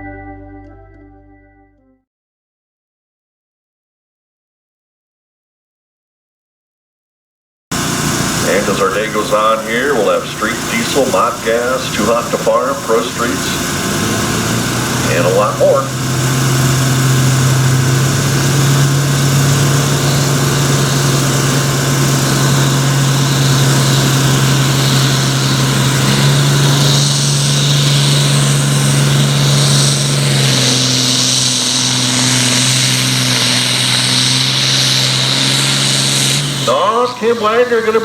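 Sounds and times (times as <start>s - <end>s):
tractor diesel engine under load: 7.7s - 38.0s.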